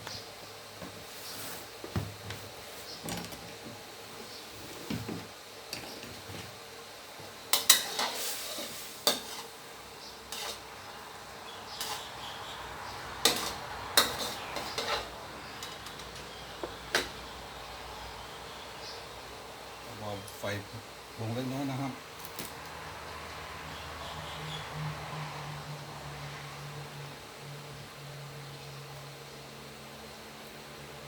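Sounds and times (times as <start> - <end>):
utensil stirring and clinking pot: 13.2 - 16.3.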